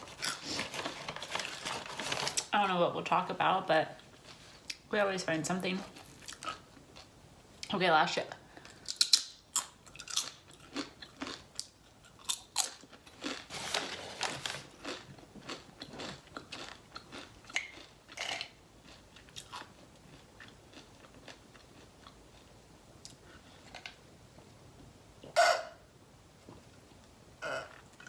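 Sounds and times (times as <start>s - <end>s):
tortilla chip crunching: 8.9s - 22.5s.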